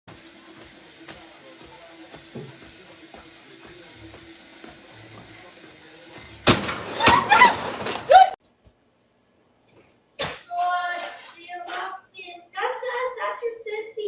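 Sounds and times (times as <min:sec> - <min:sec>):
people yelling: 0:04.9 - 0:08.4.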